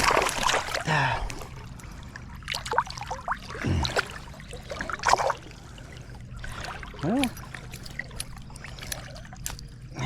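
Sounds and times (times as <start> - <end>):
river water splashing: 0.0 - 10.0.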